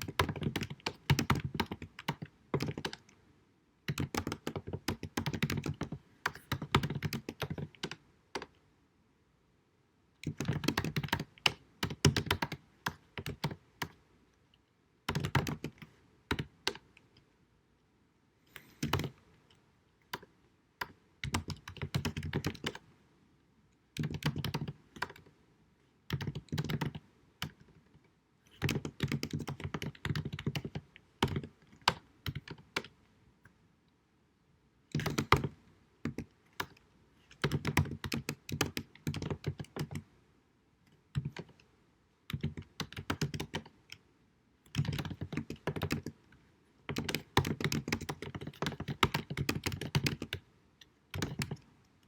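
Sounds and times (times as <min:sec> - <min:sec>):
computer keyboard typing: 0:00.0 - 0:03.2, 0:03.9 - 0:08.6, 0:10.2 - 0:14.0, 0:15.1 - 0:17.1, 0:18.5 - 0:19.2, 0:20.0 - 0:22.8, 0:24.0 - 0:25.3, 0:26.1 - 0:27.8, 0:28.5 - 0:33.0, 0:34.9 - 0:40.1, 0:41.1 - 0:41.7, 0:42.3 - 0:44.0, 0:44.7 - 0:46.2, 0:46.9 - 0:50.4, 0:51.1 - 0:51.7.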